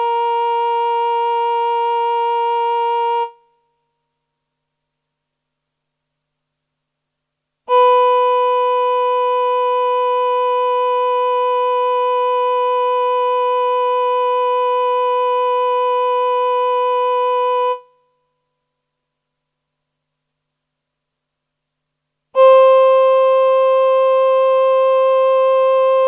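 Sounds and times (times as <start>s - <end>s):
held synthesizer note: 22.4s - 26.0s.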